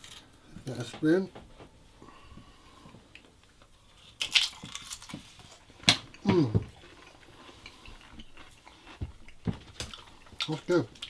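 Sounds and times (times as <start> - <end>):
papadum crunching: 3.2 - 11.0.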